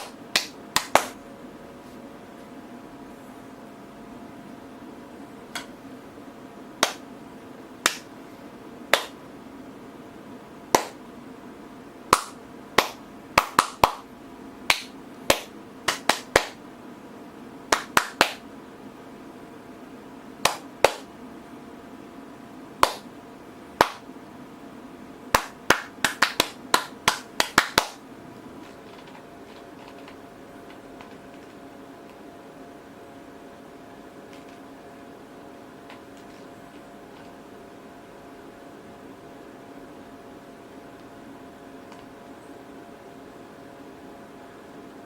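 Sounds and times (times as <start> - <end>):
sharp claps or taps: 0.0 - 1.2, 6.8 - 7.0, 7.8 - 8.1, 8.9 - 9.2, 10.7 - 11.0, 12.1 - 14.1, 14.7 - 16.6, 17.7 - 18.4, 20.4 - 21.1, 22.8 - 23.1, 23.8 - 24.0, 25.4 - 28.0
steady low hum: 0.0 - 45.0.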